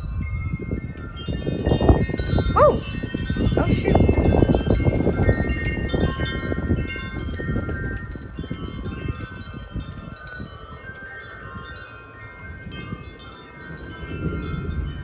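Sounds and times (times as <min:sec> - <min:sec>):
gusty wind rumble: 0:00.0 - 0:10.2
wind chimes clanging: 0:00.0 - 0:15.0.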